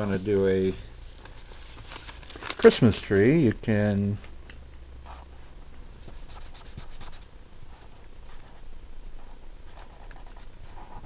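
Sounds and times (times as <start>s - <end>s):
marker scratching on paper: 6.0s - 8.6s.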